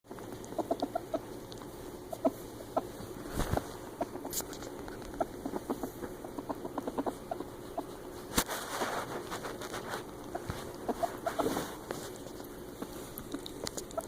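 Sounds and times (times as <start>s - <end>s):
ferret clucking chirps: 0.3s - 8.2s, 10.1s - 11.5s, 12.6s - 14.0s
rustle: 7.9s - 13.2s.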